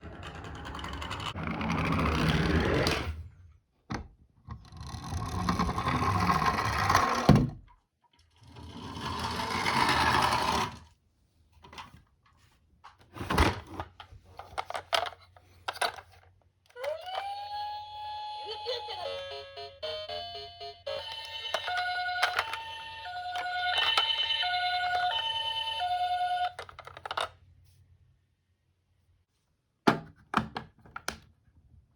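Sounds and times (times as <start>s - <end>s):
toy cars rolling down a slope: 0.0s - 3.2s, 4.6s - 7.3s, 8.4s - 10.9s, 21.1s - 27.3s.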